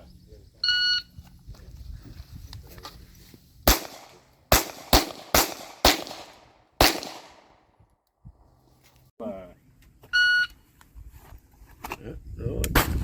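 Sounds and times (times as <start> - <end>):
handgun shots: 3.7 - 7.6.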